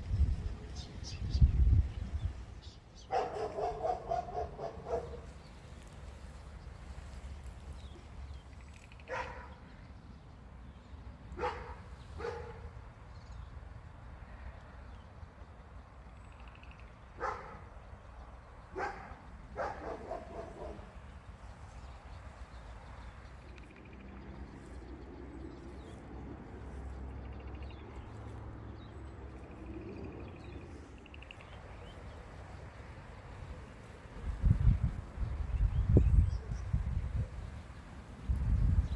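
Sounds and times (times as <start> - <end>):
dog barking: 3.1 - 5.4, 9.1 - 9.6, 11.4 - 12.8, 17.2 - 17.7, 18.7 - 21.0.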